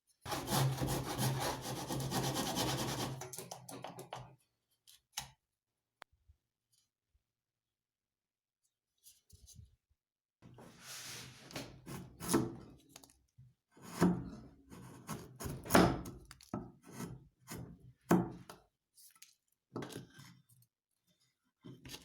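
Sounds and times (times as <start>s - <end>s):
rubbing and scraping on wood: 0.3s - 3.2s.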